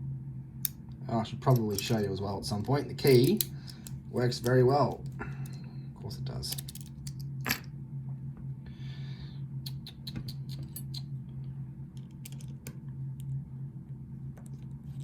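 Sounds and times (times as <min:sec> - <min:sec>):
steady low hum: 0:00.0 - 0:15.0
padlock and key clicking: 0:03.0 - 0:04.6, 0:06.5 - 0:07.6, 0:09.8 - 0:11.0, 0:12.0 - 0:12.7.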